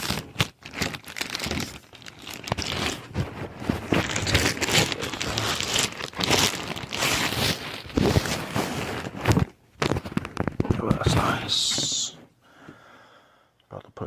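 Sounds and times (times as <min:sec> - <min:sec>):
plastic bag crinkling: 0:00.0 - 0:11.0.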